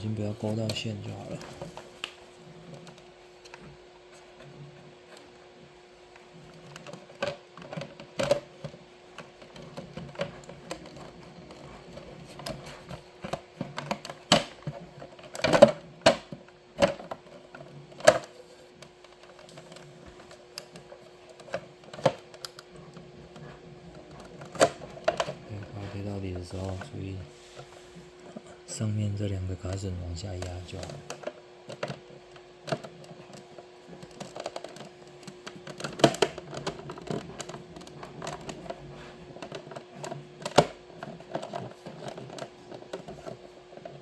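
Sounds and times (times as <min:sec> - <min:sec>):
plastic parts clicking and knocking: 0:06.2 - 0:26.9, 0:29.6 - 0:44.0.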